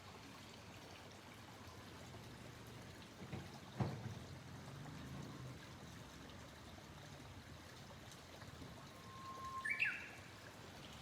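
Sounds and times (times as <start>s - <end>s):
stream trickling: 0.0s - 11.0s
cuckoo call: 9.0s - 10.2s.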